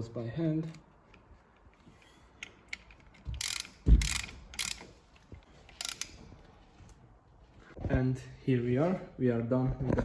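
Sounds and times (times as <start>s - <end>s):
ratchet wrench clicking: 2.7s - 4.9s, 5.7s - 6.2s.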